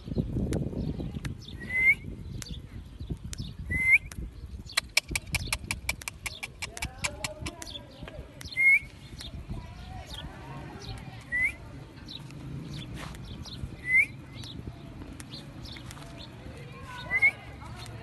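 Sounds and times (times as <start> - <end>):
sharp clicks: 3.2 - 8.6, 14.4 - 15.9
partridge calling: 4.7 - 9.0.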